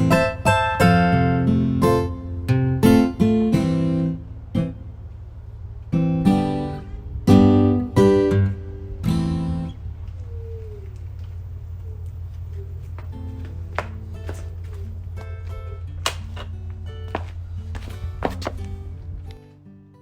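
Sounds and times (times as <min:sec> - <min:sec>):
acoustic guitar strumming: 0:00.0 - 0:05.0, 0:13.1 - 0:20.0.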